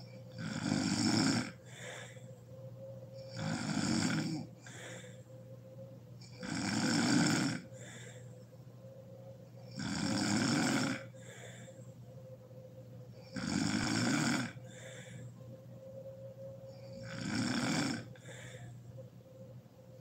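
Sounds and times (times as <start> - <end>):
woman snoring: 0.0 - 2.2, 3.2 - 5.2, 6.3 - 8.2, 9.7 - 11.7, 13.2 - 15.2, 16.7 - 18.6
soft breath: 1.6 - 3.2, 4.4 - 5.7, 7.6 - 9.3, 11.0 - 12.6, 14.5 - 17.0, 18.0 - 19.2.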